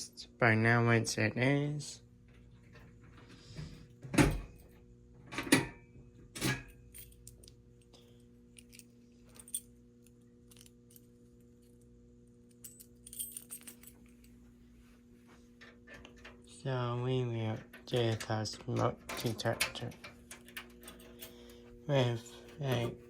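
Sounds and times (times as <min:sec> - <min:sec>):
steady low hum: 0:00.0 - 0:23.0
keys jingling: 0:08.5 - 0:09.8, 0:12.5 - 0:14.4, 0:17.5 - 0:23.0.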